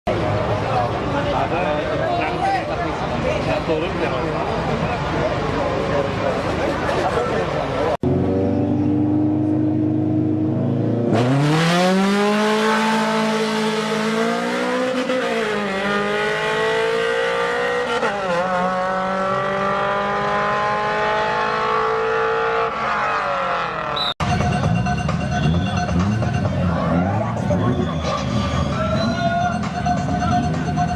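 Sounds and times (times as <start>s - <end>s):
race car engine accelerating: 5.3s - 24.0s.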